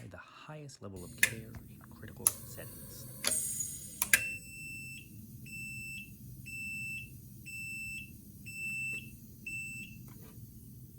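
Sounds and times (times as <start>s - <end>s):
high alarm beeps: 3.4s - 10.0s.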